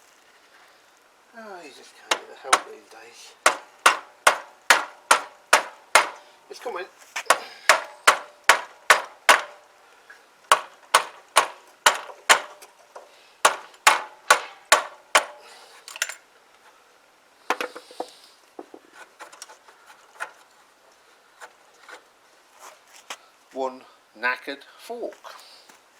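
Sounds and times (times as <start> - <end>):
hammer striking metal fork: 3.5 - 6.2, 13.5 - 15.4.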